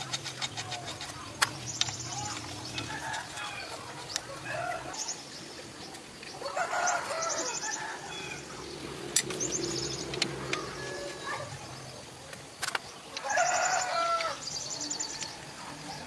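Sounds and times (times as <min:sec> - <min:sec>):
sharp clicks: 0:09.1 - 0:11.3, 0:12.3 - 0:13.3.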